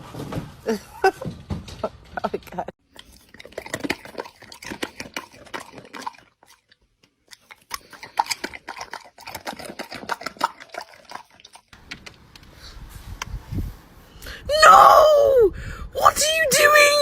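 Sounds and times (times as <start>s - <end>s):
animal chewing with crunching clicks: 2.8s - 12.2s.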